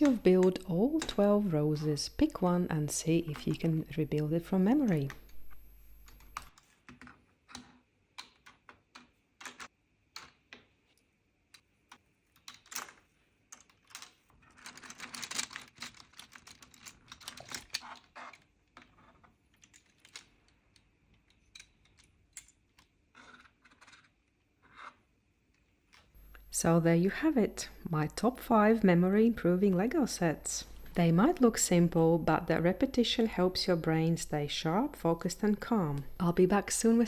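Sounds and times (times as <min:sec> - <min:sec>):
plastic bricks clicking and rattling: 0:12.4 - 0:20.6.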